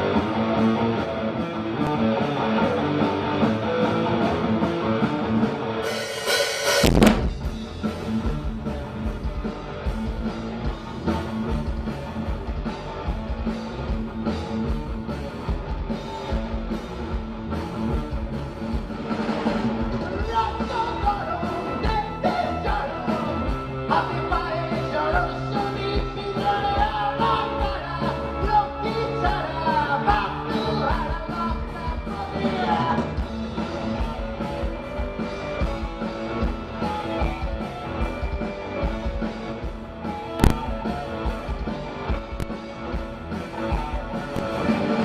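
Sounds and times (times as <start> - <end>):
rock band playing live: 0.0 - 45.0
person singing: 20.0 - 33.2.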